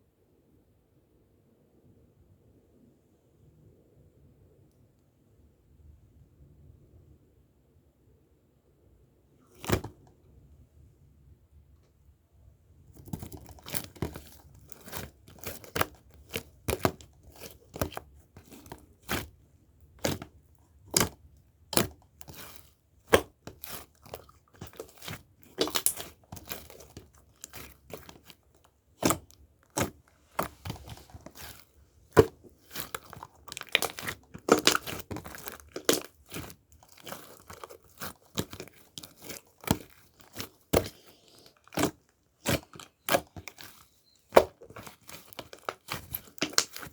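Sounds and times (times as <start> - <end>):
crisp crackling and crinkling: 13.0 - 21.2, 21.8 - 46.9.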